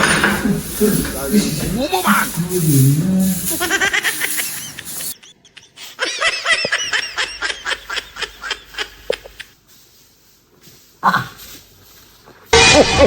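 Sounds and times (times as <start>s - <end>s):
person laughing high-pitched: 0.4s - 9.5s, 12.6s - 13.0s.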